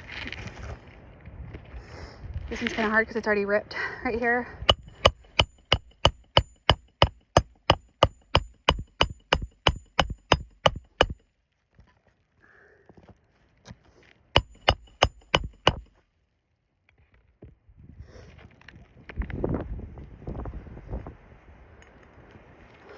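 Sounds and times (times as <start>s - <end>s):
hammer driving nails: 4.7s - 11.2s, 14.4s - 15.9s.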